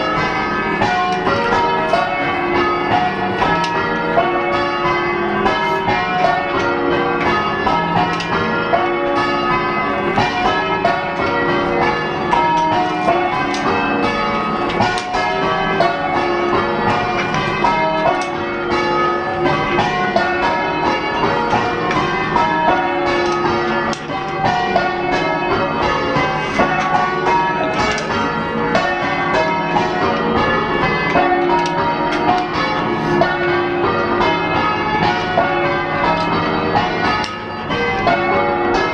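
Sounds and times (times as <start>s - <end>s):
church bells change ringing: 0.0s - 38.9s.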